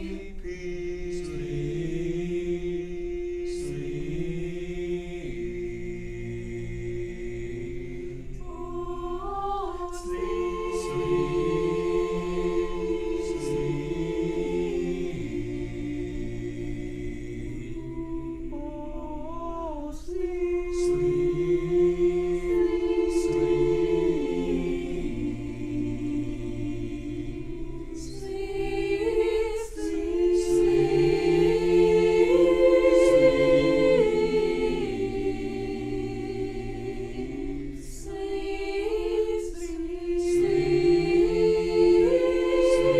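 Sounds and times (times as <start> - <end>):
choir singing unaccompanied: 0.0 - 42.9.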